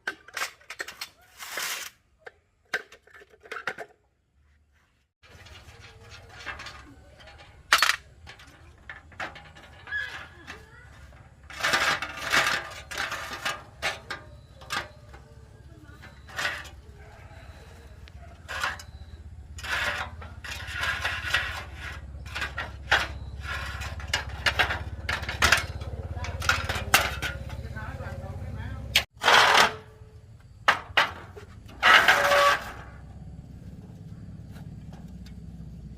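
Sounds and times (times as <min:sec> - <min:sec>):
metal tools clinking: 0:05.3 - 0:29.8.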